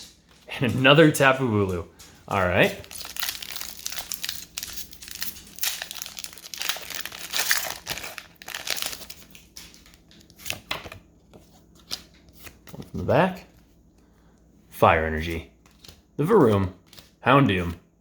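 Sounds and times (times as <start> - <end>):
foil wrapper crinkling: 0.0 - 10.8.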